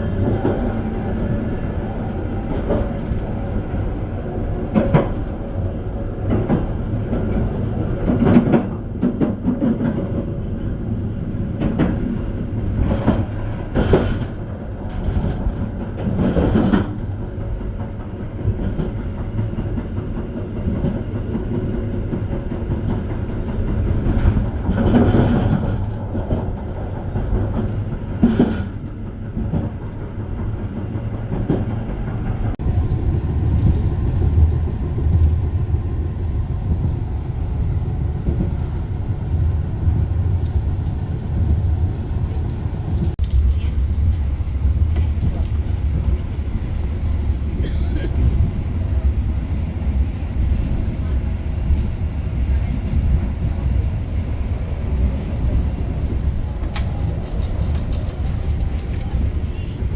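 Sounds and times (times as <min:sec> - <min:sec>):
train rumble inside carriage: 0:00.0 - 0:59.9
wheels clacking over rails: 0:52.6 - 0:59.9.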